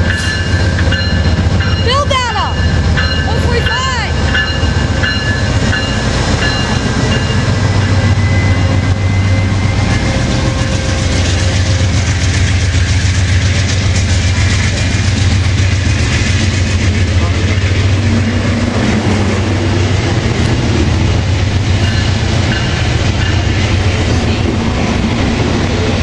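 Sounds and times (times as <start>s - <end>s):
locomotive engine drone: 0.0s - 26.0s
rail and wheel noise: 0.0s - 26.0s.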